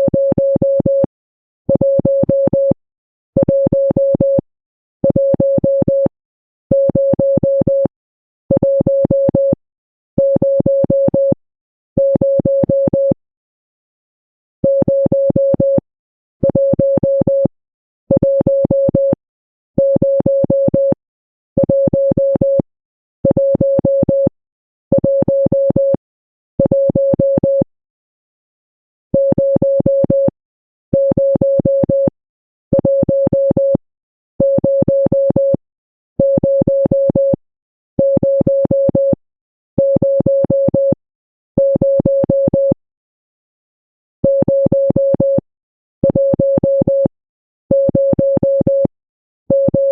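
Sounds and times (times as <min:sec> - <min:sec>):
morse code beeps: 0:34.4 - 0:35.6, 0:38.0 - 0:39.2, 0:39.8 - 0:41.0, 0:44.2 - 0:45.4, 0:46.0 - 0:47.1, 0:49.5 - 0:49.9.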